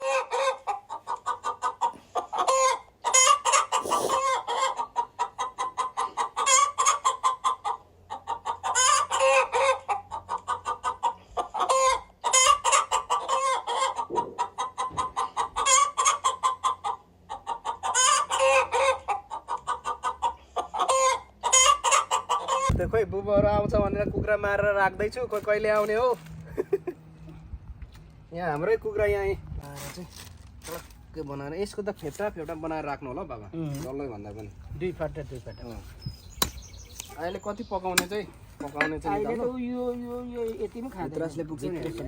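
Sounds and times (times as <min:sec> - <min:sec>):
chickens clucking: 0:00.0 - 0:22.8, 0:35.5 - 0:42.0.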